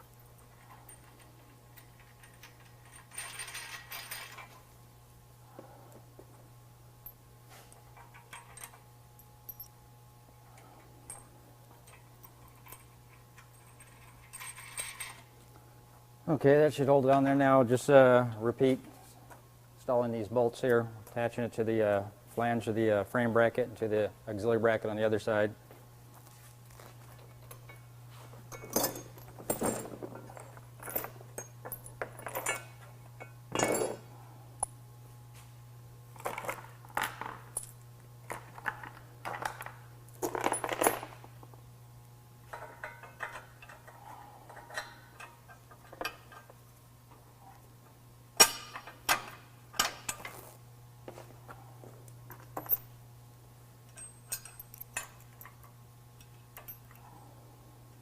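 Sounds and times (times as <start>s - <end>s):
steady low hum: 0.0s - 58.0s
bolts clinking against metal: 28.5s - 34.0s, 42.5s - 46.6s, 48.4s - 50.4s, 53.8s - 57.2s.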